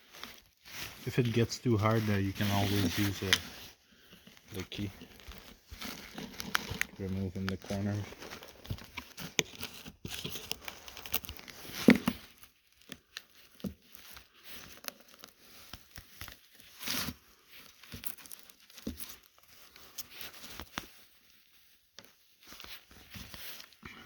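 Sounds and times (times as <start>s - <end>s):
scraping and brushing sawdust: 0.1s - 3.7s.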